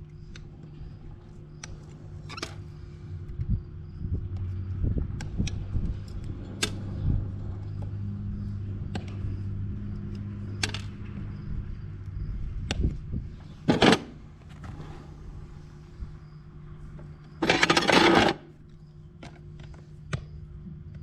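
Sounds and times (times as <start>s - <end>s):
loud rattle: 13.7s - 14.2s, 17.4s - 18.5s
sharp clicks and knocks: 17.3s - 18.5s.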